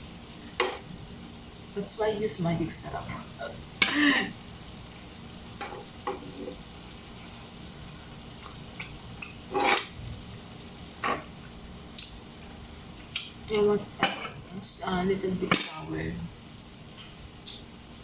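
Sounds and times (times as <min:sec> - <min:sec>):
faint hiss: 0:00.0 - 0:18.0
utensils scraping a pan: 0:09.5 - 0:10.0.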